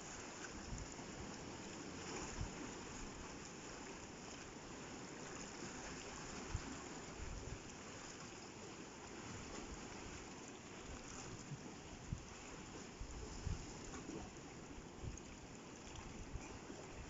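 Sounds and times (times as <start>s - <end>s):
sea water splashing over rocks: 0.0s - 17.0s.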